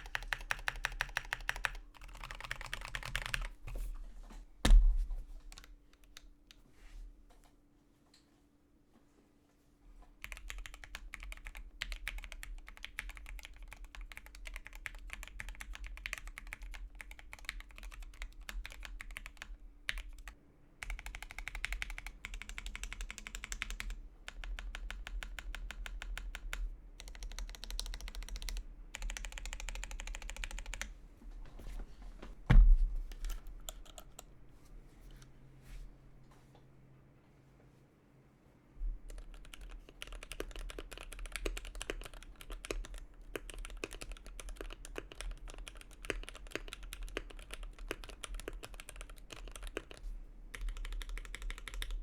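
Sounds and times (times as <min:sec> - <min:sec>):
clicky mechanical keyboard typing: 0:00.0 - 0:03.6, 0:10.2 - 0:30.9, 0:33.1 - 0:34.3, 0:39.1 - 0:52.0
loud thump: 0:04.6 - 0:05.1, 0:32.4 - 0:33.0.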